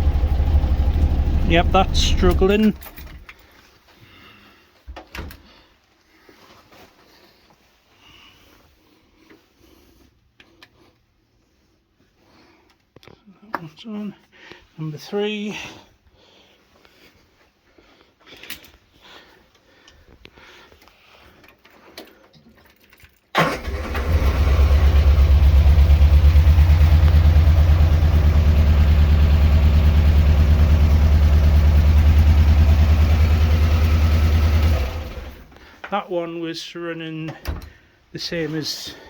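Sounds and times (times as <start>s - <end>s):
car engine running: 0.0s - 3.1s, 24.2s - 35.5s
faint clicks and handling noises: 10.0s - 11.1s, 12.6s - 13.9s, 18.0s - 23.3s.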